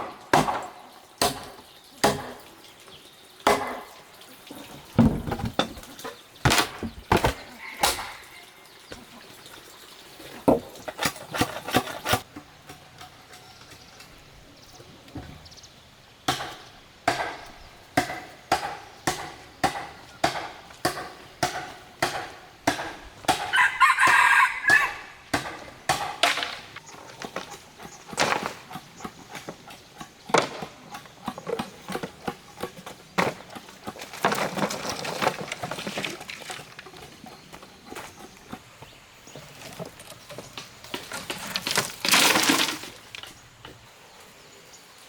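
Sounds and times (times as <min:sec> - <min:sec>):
rooster crowing: 0:07.5 - 0:08.6, 0:23.5 - 0:25.2.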